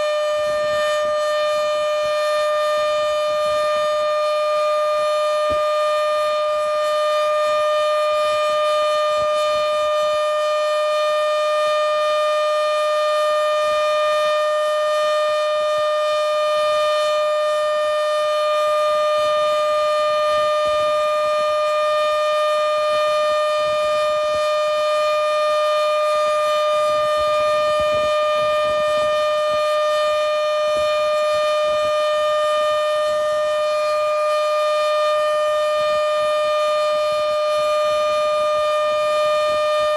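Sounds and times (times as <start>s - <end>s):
warning siren steady high tone: 0.0s - 39.9s.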